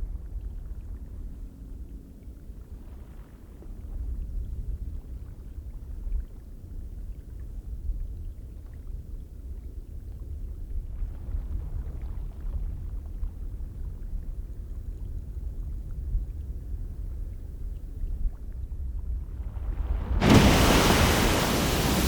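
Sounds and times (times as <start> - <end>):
faint water splashes: 17.2 - 22.0
geyser water and steam rumbling: 19.6 - 22.0.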